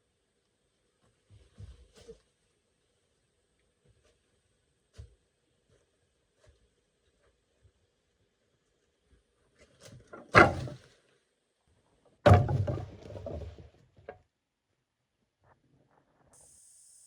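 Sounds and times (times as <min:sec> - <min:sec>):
heavy knocks: 0:12.3 - 0:13.6.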